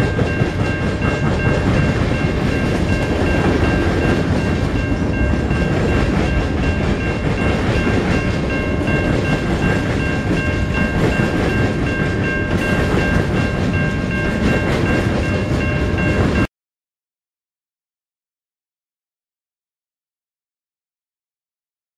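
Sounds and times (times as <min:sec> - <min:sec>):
train wheels rumbling on rail: 0:00.0 - 0:16.5.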